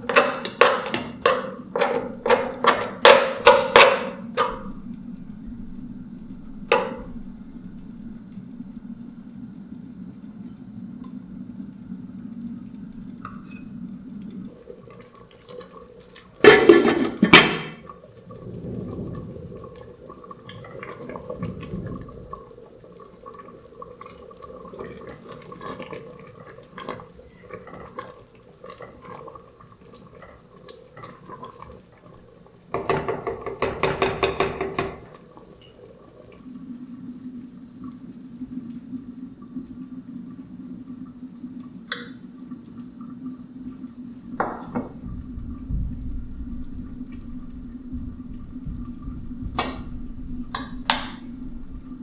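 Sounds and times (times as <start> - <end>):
pots and utensils clinking: 0.0 - 4.9, 6.6 - 7.2, 16.4 - 17.9, 32.7 - 35.2, 41.9 - 42.2, 44.4 - 52.0
low steady hum: 0.0 - 15.4, 36.2 - 52.0.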